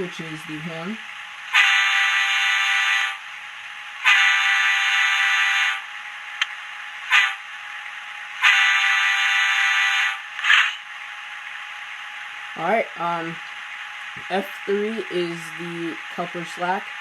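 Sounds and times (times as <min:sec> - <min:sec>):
tinny model train horn: 0:01.6 - 0:03.2, 0:04.0 - 0:05.8, 0:08.4 - 0:10.8.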